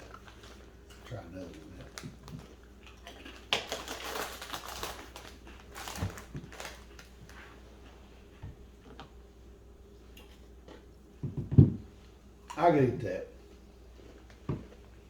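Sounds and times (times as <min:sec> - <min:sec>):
person crunching chips: 0:00.0 - 0:07.4.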